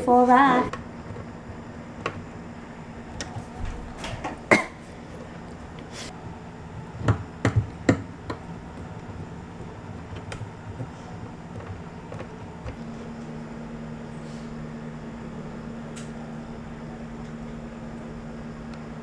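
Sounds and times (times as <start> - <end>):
steady low hum: 0.0 - 19.0
furniture parts knocking: 0.4 - 12.8.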